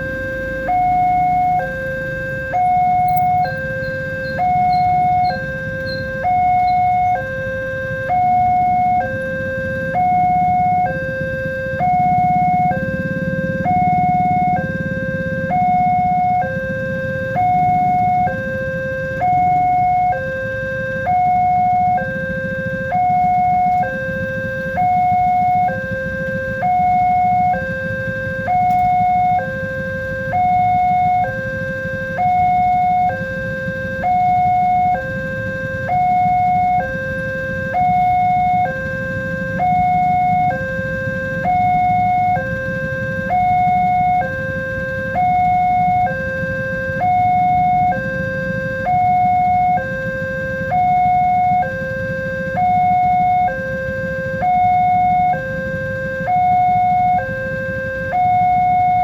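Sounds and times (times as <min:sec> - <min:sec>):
two-tone crossing alarm: 0:00.0 - 0:59.0.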